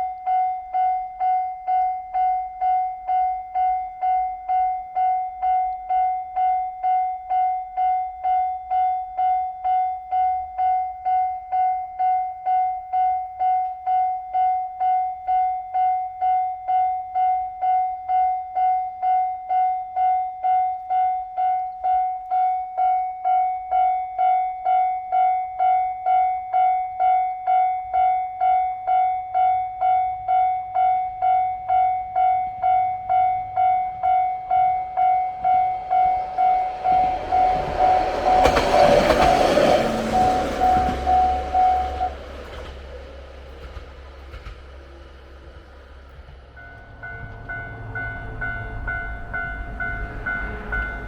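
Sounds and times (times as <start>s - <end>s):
railroad crossing alarm ringing: 0.0s - 51.0s
diesel railcar rumbling past: 30.6s - 51.0s.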